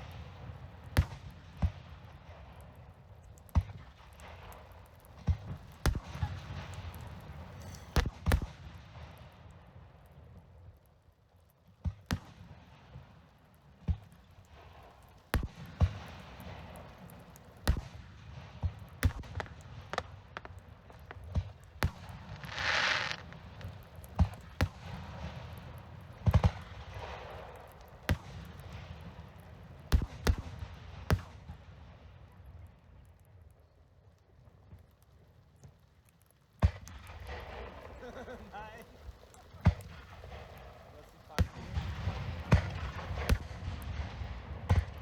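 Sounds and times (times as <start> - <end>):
fireworks bangs: 3.5 - 9.2, 13.8 - 31.7, 36.6 - 45.0
fireworks hissing burst: 22.0 - 24.4.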